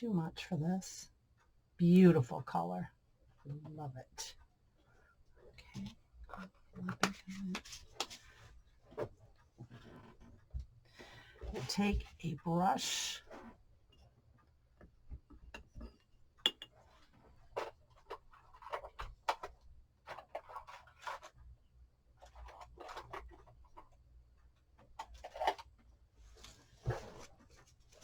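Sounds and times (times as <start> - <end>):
paintbrush tapping paint dish: 16.5 - 16.7.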